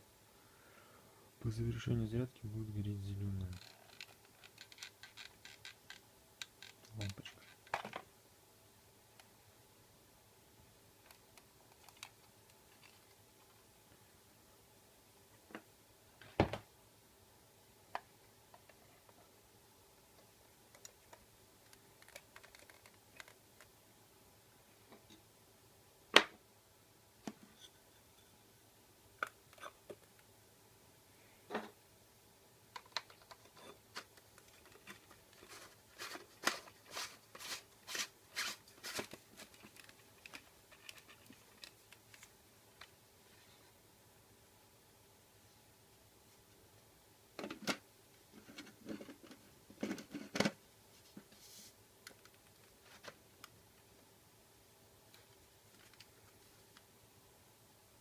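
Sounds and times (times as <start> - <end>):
small objects clicking and scraping: 3.5 - 8.0, 20.7 - 23.7, 32.8 - 42.9.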